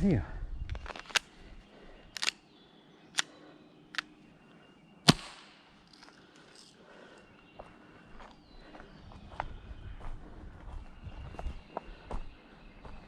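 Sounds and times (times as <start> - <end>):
airsoft gun shots: 5.1 - 5.6.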